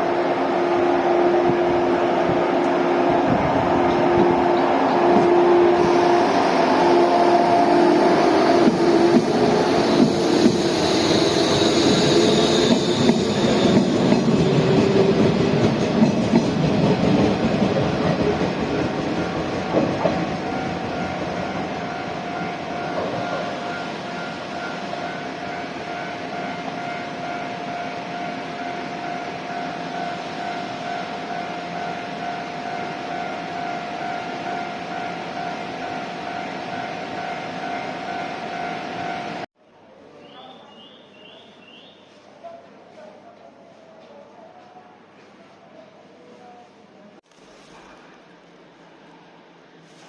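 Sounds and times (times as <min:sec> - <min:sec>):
train wheels clattering on rails: 0:08.4 - 0:23.7.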